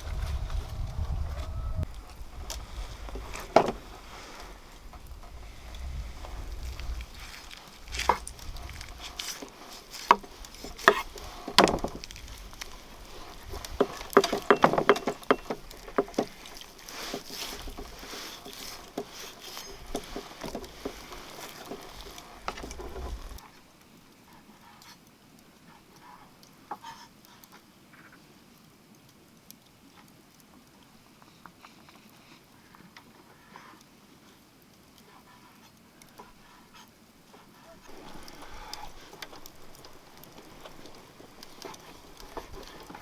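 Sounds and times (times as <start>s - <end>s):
low rumble: 0.0s - 3.3s, 3.9s - 9.2s
sharp knocks and clicks: 13.8s - 16.3s.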